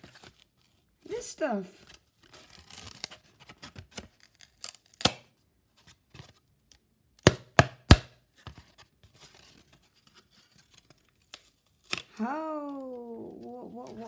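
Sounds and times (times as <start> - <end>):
plastic speaker being pried apart: 7.3 - 8.1.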